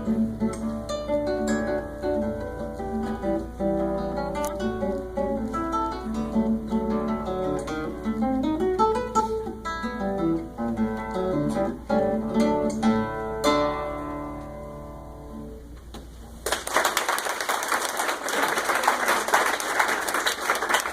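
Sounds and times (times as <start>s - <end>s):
classical guitar playing: 0.0s - 16.4s
audience applause: 16.4s - 20.9s.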